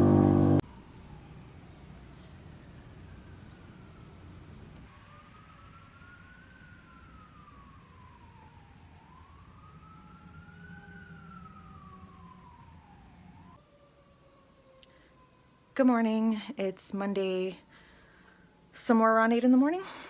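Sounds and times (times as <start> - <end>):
low rumble: 0.0 - 0.6
faint siren wailing: 0.0 - 20.0.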